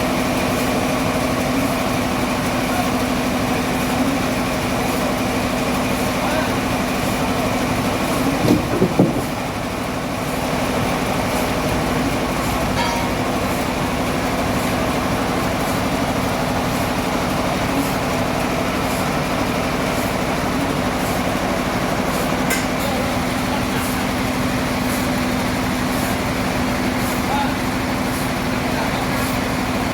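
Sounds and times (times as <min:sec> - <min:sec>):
sawmill machinery drone: 0:00.0 - 0:29.9.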